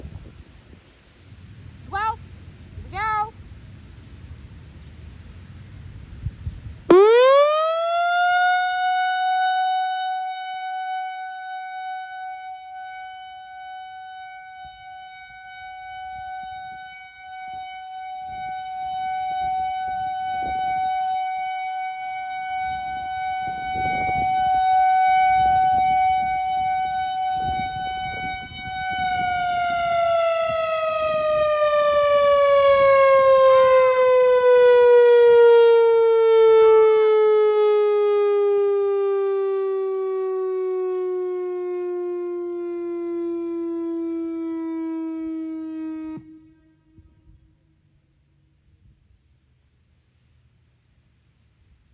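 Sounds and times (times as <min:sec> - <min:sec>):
electronic warning siren: 0:06.9 - 0:47.1.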